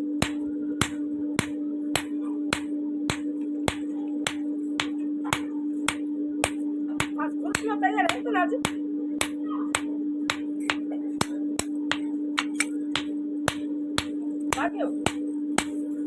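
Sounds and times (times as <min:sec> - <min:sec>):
constant low hum: 0:00.0 - 0:16.0.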